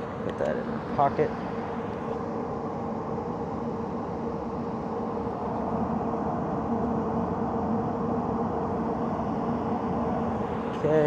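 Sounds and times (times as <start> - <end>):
hvac mechanical hum: 0.0 - 11.0.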